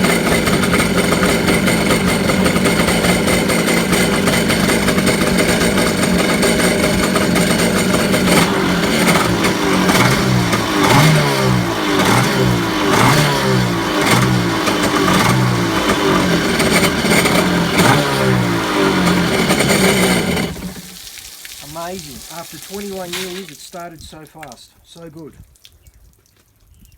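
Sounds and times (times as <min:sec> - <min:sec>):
jet ski engine revving: 0:00.0 - 0:21.0.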